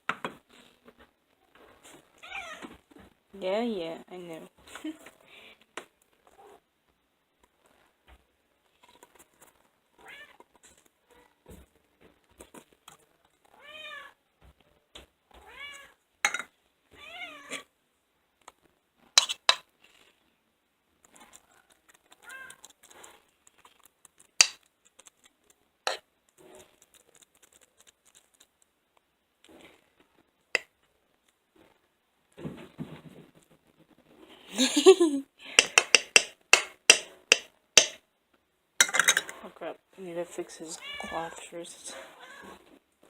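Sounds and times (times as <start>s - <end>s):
sharp clicks or taps: 35.6s - 38.0s.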